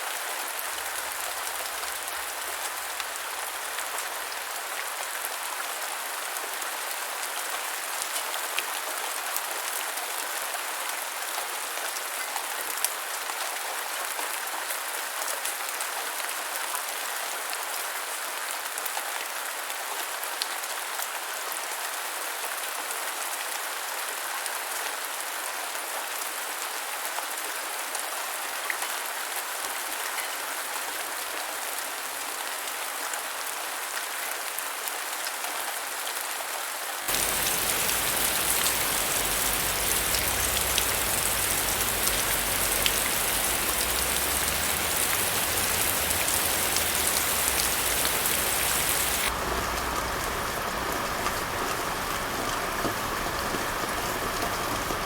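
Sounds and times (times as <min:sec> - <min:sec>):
steady rain falling: 0:00.0 - 0:24.4, 0:36.8 - 0:55.0
loud deep rain: 0:37.1 - 0:55.0
raindrop ticks: 0:37.1 - 0:55.0.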